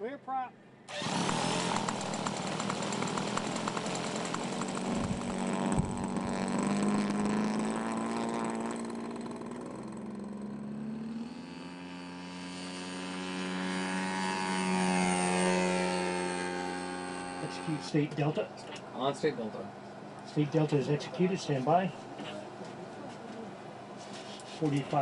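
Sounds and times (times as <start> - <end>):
drone aircraft engine running: 0.9 - 18.8.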